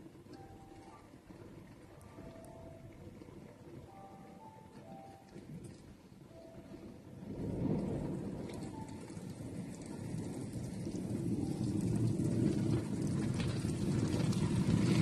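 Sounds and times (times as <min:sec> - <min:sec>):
water spray drumming on car: 0:07.3 - 0:15.0.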